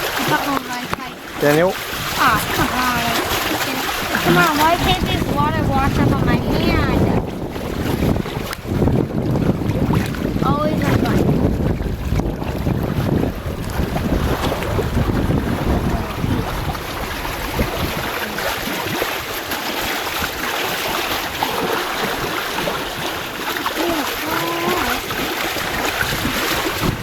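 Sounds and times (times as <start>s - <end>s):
water splashing against hull: 0.0s - 27.0s
wind on microphone: 0.0s - 27.0s.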